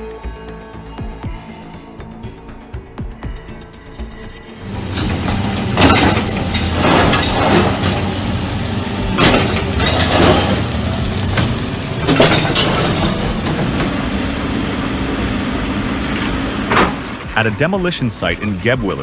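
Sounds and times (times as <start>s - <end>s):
debris crashing and crunching: 4.6s - 17.7s
excavator engine running: 4.6s - 19.0s.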